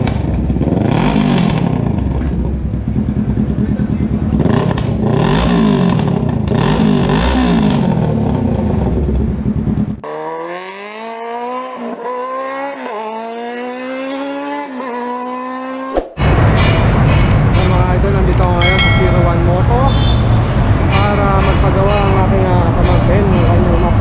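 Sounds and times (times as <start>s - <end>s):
motorcycle accelerating through gears: 0.0s - 16.0s
motorcycle engine revving: 0.0s - 16.3s.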